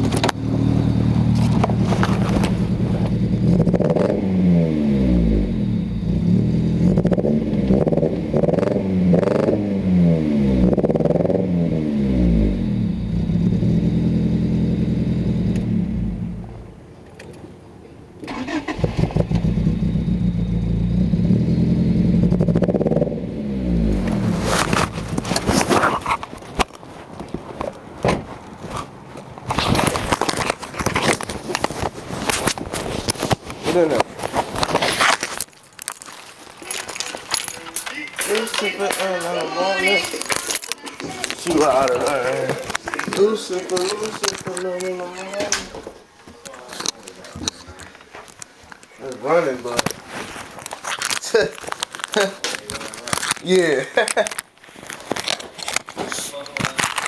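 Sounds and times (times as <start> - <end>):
misfiring car engine revving: 0.0 - 16.8, 18.3 - 25.8.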